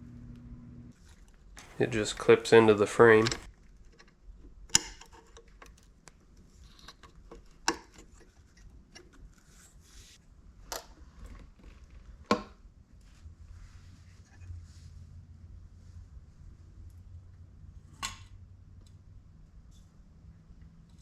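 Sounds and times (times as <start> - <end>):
small parts clicking and knocking: 1.6 - 9.2.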